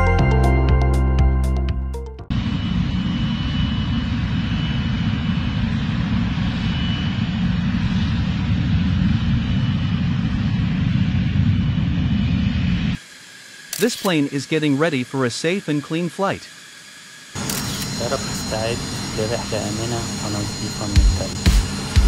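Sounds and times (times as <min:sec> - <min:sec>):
aircraft engine rumble: 0:02.3 - 0:15.8, 0:16.4 - 0:22.0
faint high whine: 0:12.5 - 0:22.0.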